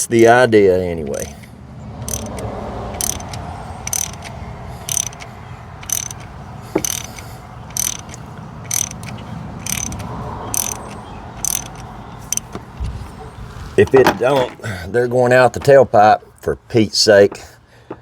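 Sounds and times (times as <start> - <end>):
ratchet wrench clicking: 2.0 - 12.6.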